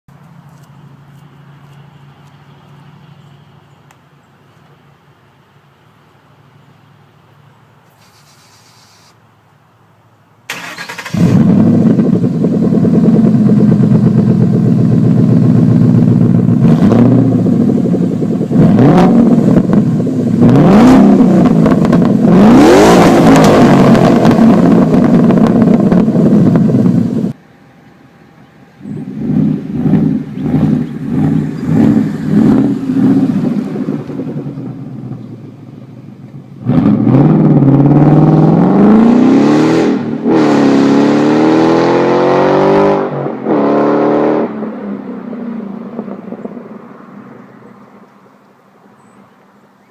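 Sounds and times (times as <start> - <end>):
car engine revving loud: 10.8 - 27.3, 29.0 - 35.2, 36.6 - 44.7.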